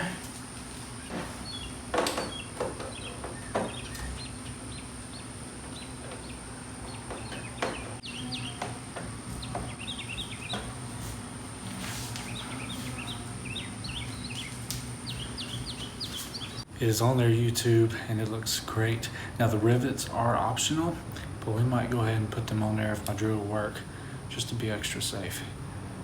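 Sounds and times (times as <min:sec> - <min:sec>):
steady low hum: 0:00.0 - 0:26.0
small birds chirping: 0:00.9 - 0:16.7.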